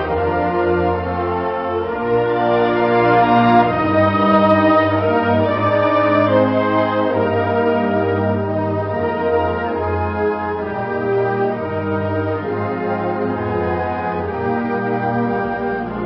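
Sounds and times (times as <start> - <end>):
brass music with slow chords: 0.0 - 16.0.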